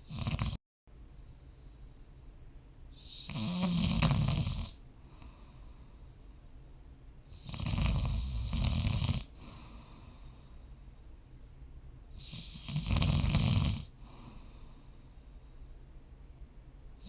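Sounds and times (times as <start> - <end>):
person snoring: 0.0 - 0.6, 3.0 - 4.8, 7.3 - 10.4, 12.2 - 14.8.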